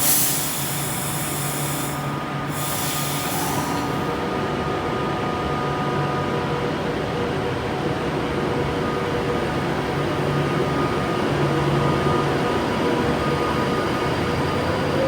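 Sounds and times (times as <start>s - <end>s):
train rumbling: 0.0s - 4.8s.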